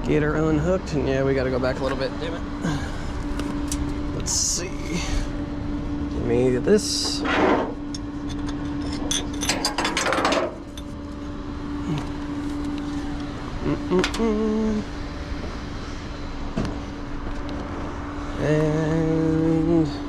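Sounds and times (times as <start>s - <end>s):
tow truck engine humming: 0.0s - 6.9s, 10.5s - 20.0s
rattling and clinking: 8.0s - 10.9s.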